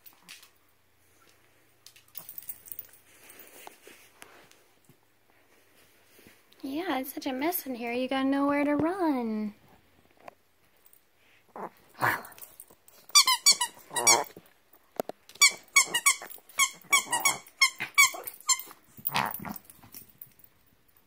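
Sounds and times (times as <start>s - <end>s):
squeaky toy squeaking: 13.1s - 14.4s, 15.4s - 18.8s.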